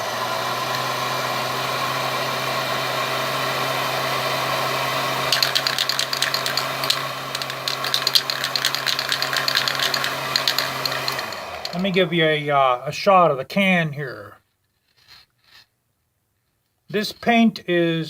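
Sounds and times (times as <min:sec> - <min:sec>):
heat gun running: 0:00.0 - 0:12.5
rapid rattling clatter: 0:05.3 - 0:12.1.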